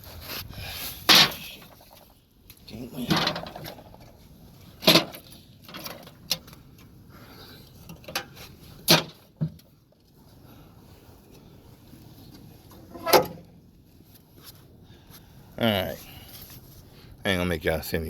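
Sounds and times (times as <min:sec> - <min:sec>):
thumps and clatters: 0:03.1 - 0:04.2.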